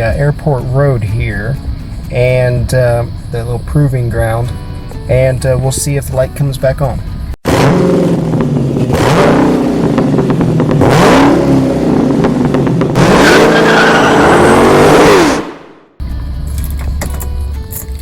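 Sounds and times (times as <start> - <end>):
car engine revving: 6.9 - 17.0.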